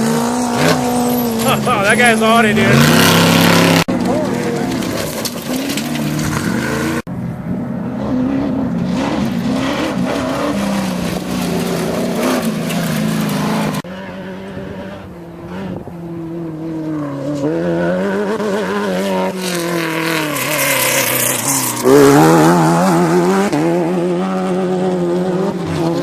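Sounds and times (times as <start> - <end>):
race vehicle engines revving: 0.0 - 26.0.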